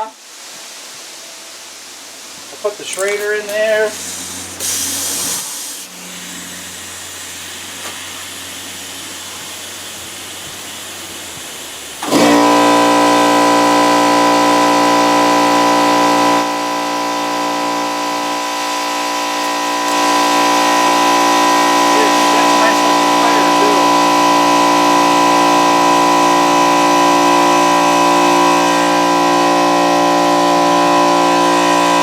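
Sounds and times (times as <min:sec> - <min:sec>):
machine motor humming: 0:02.3 - 0:32.0
air hissing: 0:02.9 - 0:12.2.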